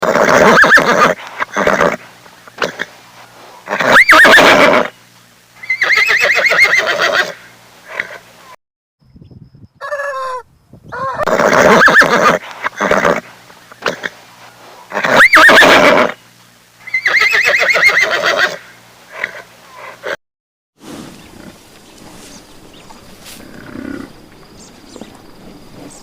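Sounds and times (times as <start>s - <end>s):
horse neighing: 0.0s - 2.0s, 3.7s - 4.9s, 5.6s - 8.2s, 11.0s - 14.1s, 14.9s - 16.2s, 16.9s - 19.5s
rustling: 20.8s - 26.0s.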